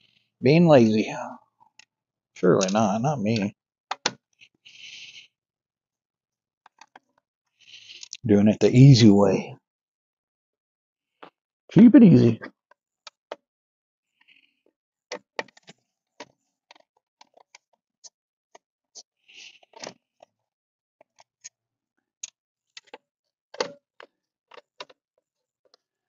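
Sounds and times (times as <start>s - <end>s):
plastic clicks and clacks: 23.6s - 25.0s.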